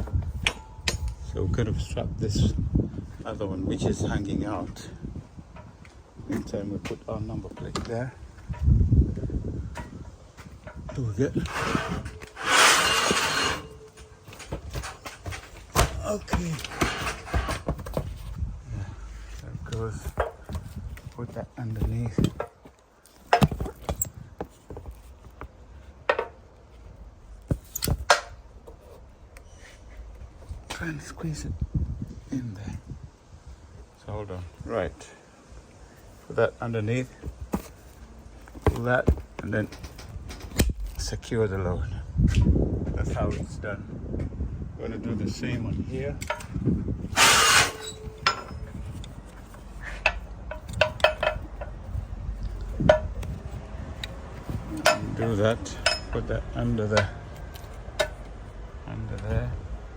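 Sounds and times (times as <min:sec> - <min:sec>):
metal clank: 0:00.4 - 0:01.3, 0:10.6 - 0:18.1, 0:46.2 - 0:49.1, 0:50.0 - 0:51.8, 0:52.8 - 0:53.3, 0:54.7 - 0:56.3, 0:57.9 - 0:58.3
ratchet strap hardware clinking: 0:47.2 - 0:56.3, 0:56.9 - 0:58.4.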